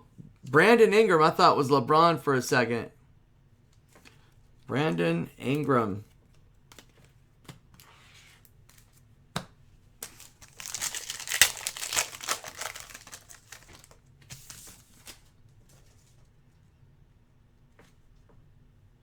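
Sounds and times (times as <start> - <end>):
cards clicking: 10.0 - 14.0
plastic wrapper tearing and crinkling: 10.0 - 15.2.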